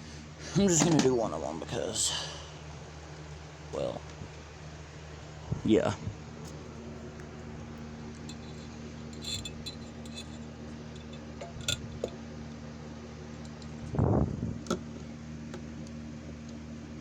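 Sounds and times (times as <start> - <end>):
steady low hum: 0.0 - 17.0
light clicks and clinks: 8.2 - 12.2.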